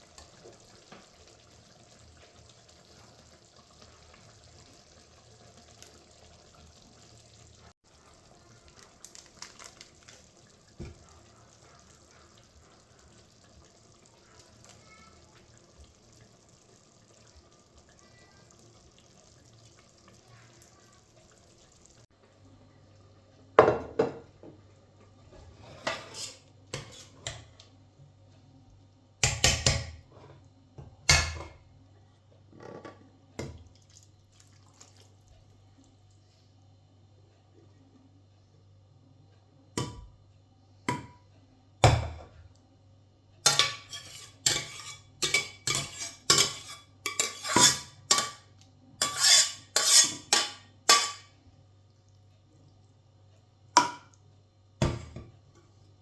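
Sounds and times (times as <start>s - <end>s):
faint running water: 0.0s - 40.0s, 43.4s - 56.0s
dishes clinking in a sink: 23.6s - 24.6s, 25.3s - 27.6s, 29.2s - 31.7s, 40.9s - 42.4s, 43.4s - 51.4s, 53.8s - 54.2s, 54.8s - 55.4s.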